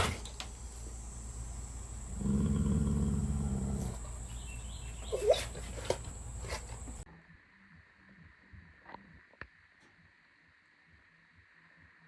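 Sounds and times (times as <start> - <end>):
dog growling: 1.2 - 7.0
dog whining: 2.1 - 7.0.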